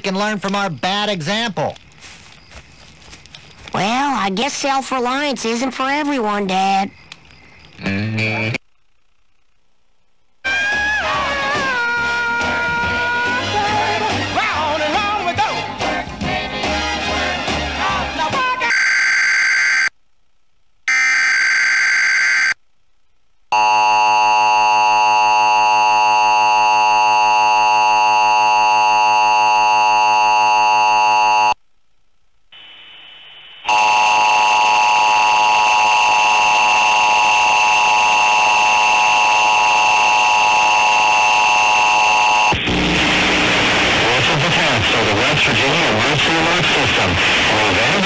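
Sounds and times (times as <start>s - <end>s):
buzzing multi-tone attention signal: 20.9s - 22.6s, 33.6s - 44.7s
steady distorted tone: 32.4s - 48.0s.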